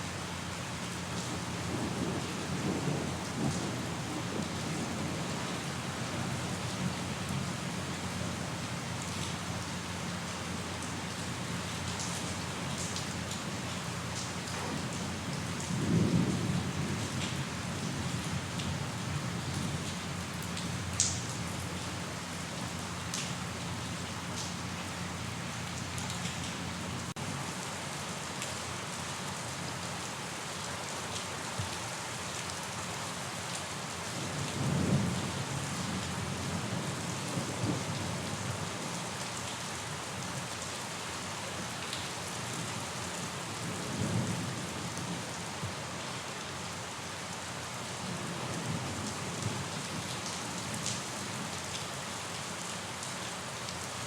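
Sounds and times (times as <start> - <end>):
steady rain: 0.0 - 54.0
low thunder rumbles: 1.3 - 7.1, 14.5 - 20.0.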